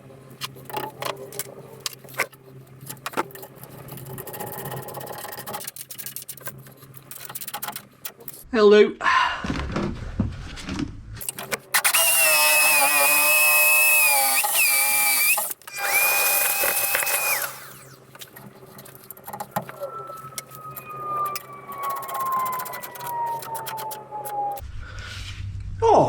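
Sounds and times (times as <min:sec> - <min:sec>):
vacuum cleaner motor whining: 0:11.8 - 0:18.1.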